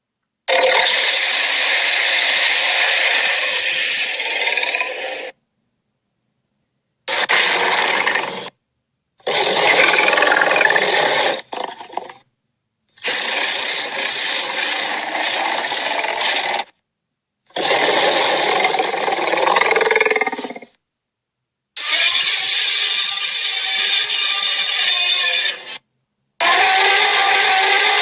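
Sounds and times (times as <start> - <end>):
dinosaur creature roars: 9.3 - 12.2, 17.6 - 20.7.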